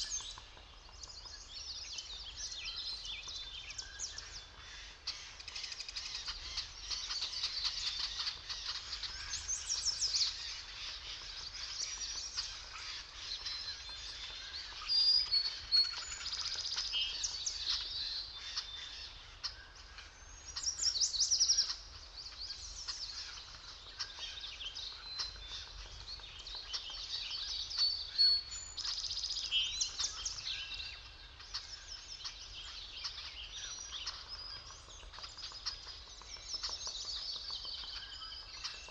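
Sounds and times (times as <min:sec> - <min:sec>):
songbirds chirping and trilling: 0:00.0 - 0:38.9.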